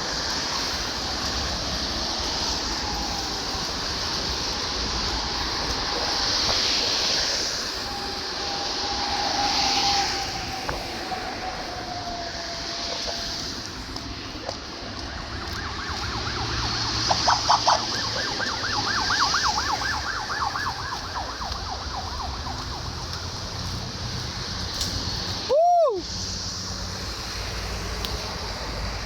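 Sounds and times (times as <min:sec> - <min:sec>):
road traffic rumble: 0:00.0 - 0:29.0
distant siren yelping: 0:01.0 - 0:23.4.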